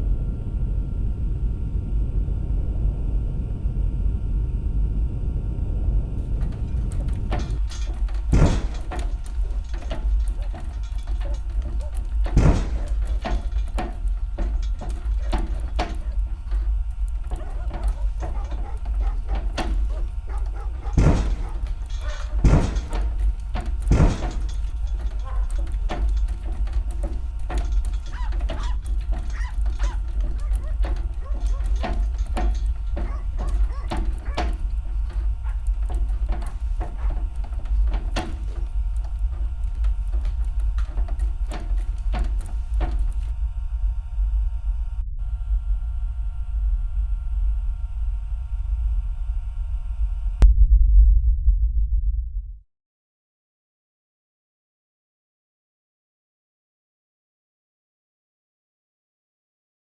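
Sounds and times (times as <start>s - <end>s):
deep low rumble: 0.0s - 52.6s
faint knocks and clicks: 6.2s - 43.4s.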